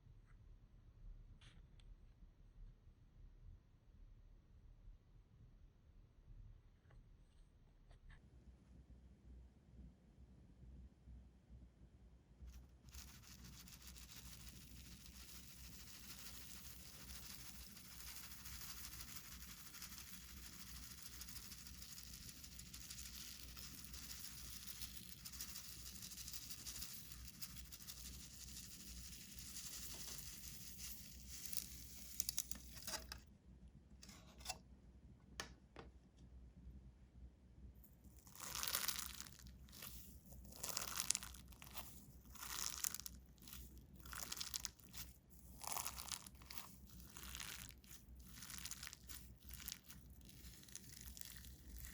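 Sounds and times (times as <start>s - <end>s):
faint steady rustle: 12.4s - 33.3s
slime crackling and squishing: 12.9s - 33.0s, 38.2s - 51.9s.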